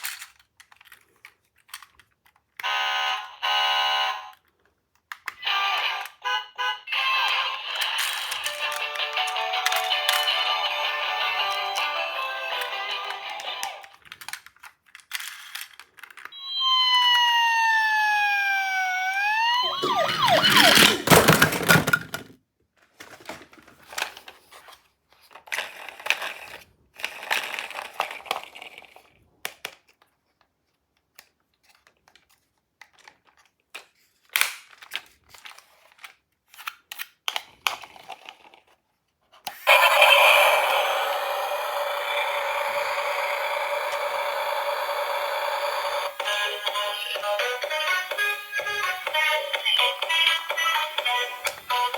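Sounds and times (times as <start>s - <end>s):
toy cars clicking and rattling: 0.0s - 2.6s, 7.3s - 16.3s, 19.7s - 22.3s, 23.8s - 30.4s, 31.1s - 47.4s
toy electronic siren: 2.6s - 4.4s, 5.4s - 13.8s, 16.3s - 21.5s, 39.6s - 51.9s
loud plastic clatter: 19.8s - 24.2s
loud steady whirring: 39.7s - 46.2s.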